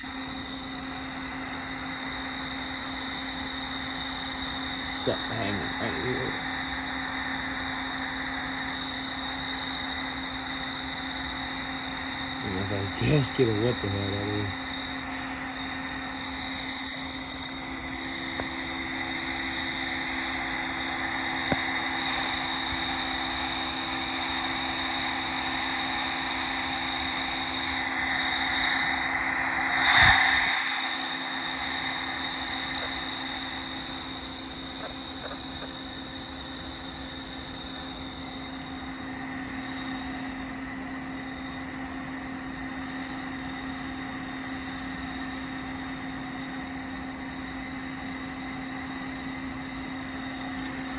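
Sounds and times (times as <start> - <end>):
air hissing from valve: 1.1 - 39.8
sharp blast of air: 28.3 - 33.7.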